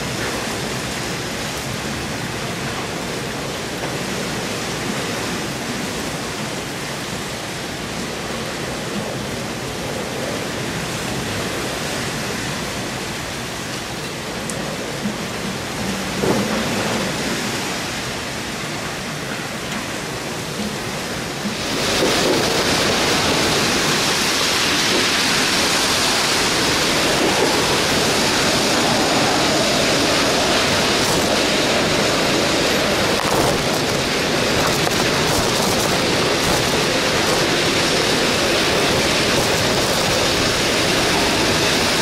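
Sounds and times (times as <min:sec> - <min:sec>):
rain: 0:00.0 - 0:42.0
wind rushing: 0:21.5 - 0:42.0.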